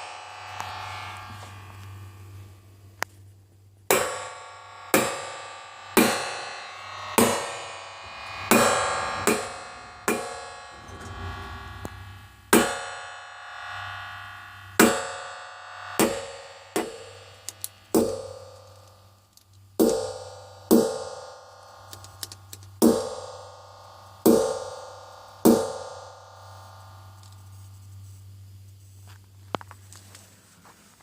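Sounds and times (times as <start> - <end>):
steady low hum: 5.6 - 14.8, 24.9 - 30.8.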